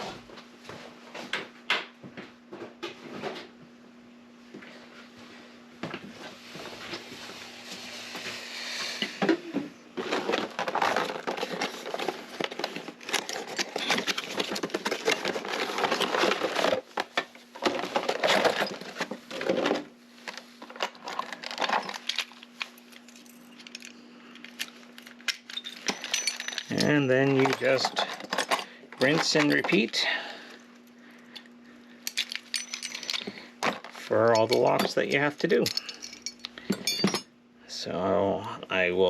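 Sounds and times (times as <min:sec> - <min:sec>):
metal lock parts clicking and rattling: 0:23.0 - 0:29.9, 0:32.1 - 0:33.3, 0:34.4 - 0:37.3.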